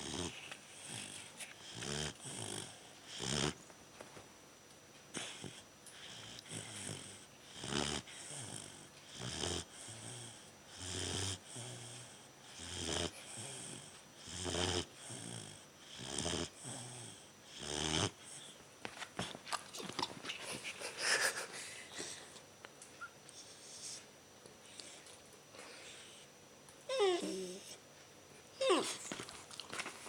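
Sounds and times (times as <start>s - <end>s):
puppy snoring: 0.0s - 3.7s, 5.1s - 18.6s, 26.9s - 27.8s, 28.6s - 30.0s
soft breaths: 20.2s - 22.6s.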